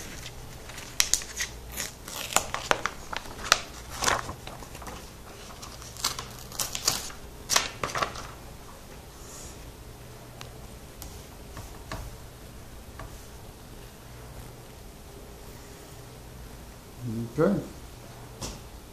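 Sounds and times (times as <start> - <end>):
plastic film peeling and crackling: 0.0 - 8.4.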